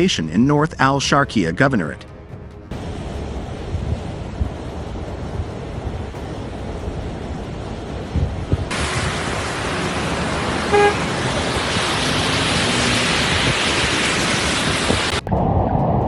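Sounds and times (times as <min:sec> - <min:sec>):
rushing flood water: 0:02.0 - 0:15.2
car horn: 0:10.5 - 0:13.0.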